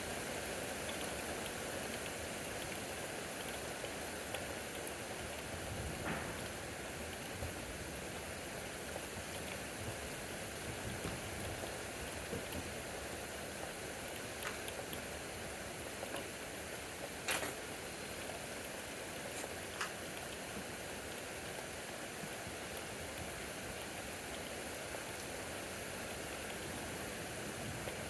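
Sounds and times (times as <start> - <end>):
heavy rain downpour: 0.0 - 28.0
raindrops tapping surfaces: 0.0 - 28.0.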